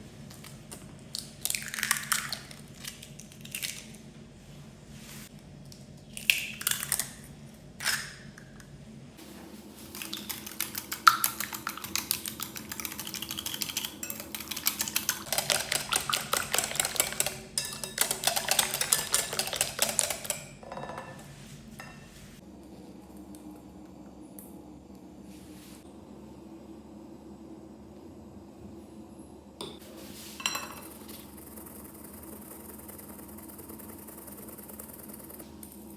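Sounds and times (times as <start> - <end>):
utensil clicking against mixing bowl: 10.2 - 20.5.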